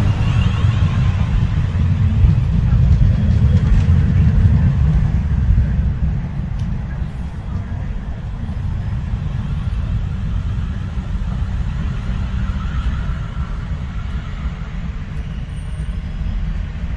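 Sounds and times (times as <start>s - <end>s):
train rumbling: 0.0s - 16.9s
faint high squeal: 11.6s - 16.6s.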